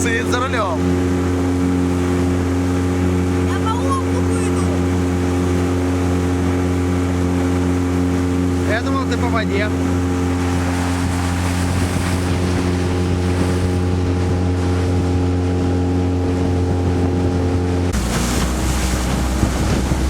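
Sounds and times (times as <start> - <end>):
outboard motor running: 0.0 - 20.0
waves: 0.0 - 20.0
wind noise on microphone: 9.7 - 20.0.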